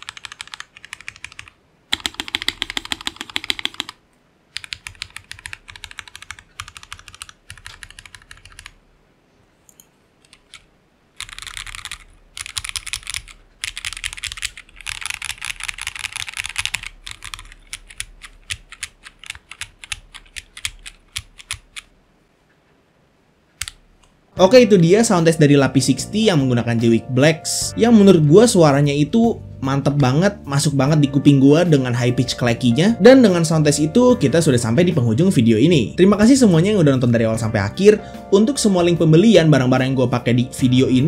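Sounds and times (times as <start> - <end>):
clacky mechanical keyboard typing: 0.0 - 4.0, 4.6 - 8.8, 11.2 - 21.9.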